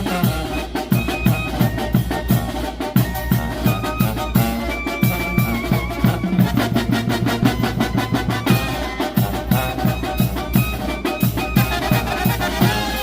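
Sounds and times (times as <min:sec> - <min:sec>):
brass band playing: 0:00.0 - 0:13.0
drum roll: 0:00.0 - 0:13.0
horns: 0:00.0 - 0:13.0.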